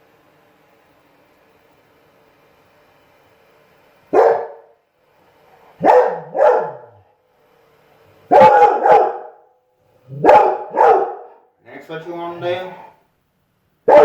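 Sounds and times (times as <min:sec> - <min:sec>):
dog barking: 0:04.1 - 0:04.8, 0:05.8 - 0:07.1, 0:08.3 - 0:09.5, 0:10.1 - 0:11.4.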